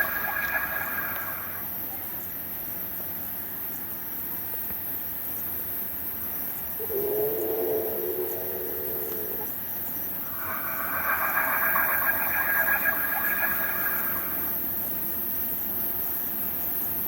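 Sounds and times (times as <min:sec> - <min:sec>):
snore-like drawn-out tone: 0:00.0 - 0:01.6, 0:06.8 - 0:09.6, 0:10.2 - 0:14.6
insects chirping: 0:00.0 - 0:17.0.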